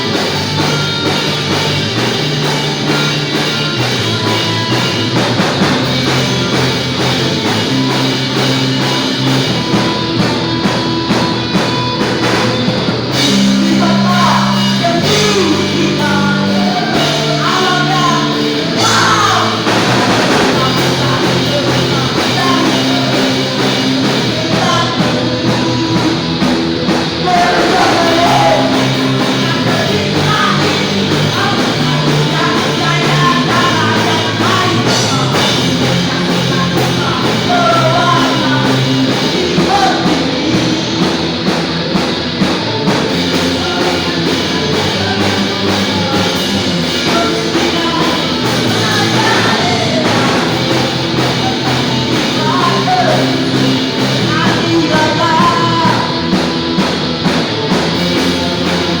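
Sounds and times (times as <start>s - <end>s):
punk rock band playing: 0.0s - 59.0s
person singing: 13.0s - 59.0s.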